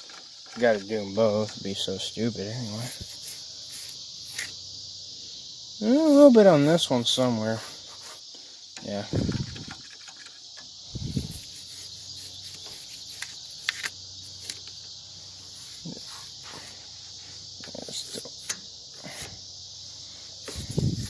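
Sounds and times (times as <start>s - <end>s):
high-pitched insect chirring: 0.0s - 21.0s
toothbrush scrubbing metal: 11.2s - 14.5s.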